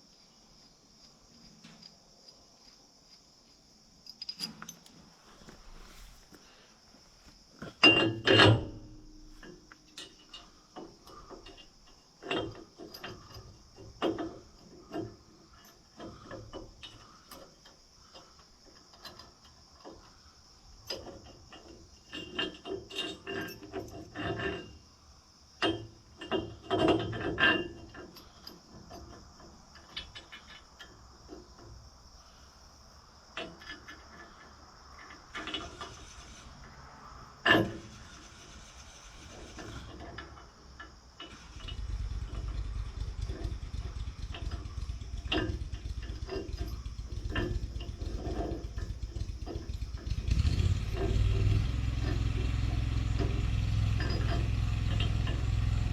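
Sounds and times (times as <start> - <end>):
hand tools clanking on metal: 7.6 - 20.1, 20.8 - 24.8, 25.6 - 31.7, 37.4 - 55.9.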